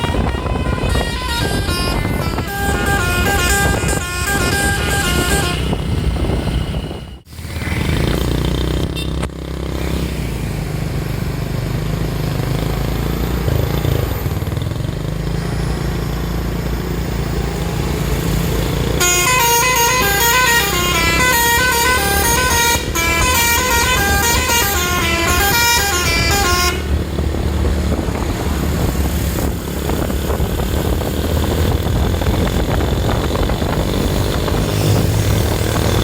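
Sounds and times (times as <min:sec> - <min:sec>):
bus horn playing a tune: 0:00.0 - 0:06.1, 0:18.9 - 0:27.3
engine and road rumble: 0:00.0 - 0:36.0.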